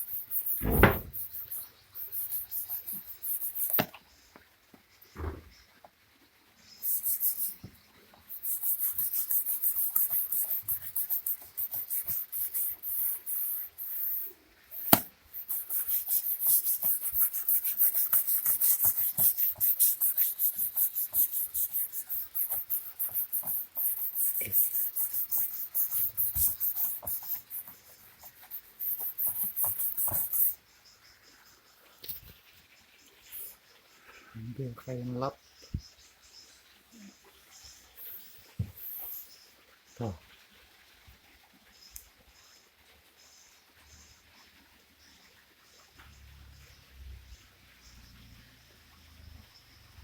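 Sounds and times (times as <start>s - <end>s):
toothbrush scrubbing rubber: 0.0s - 3.8s, 6.8s - 7.7s, 8.3s - 30.6s
sharp click: 0.6s - 1.2s.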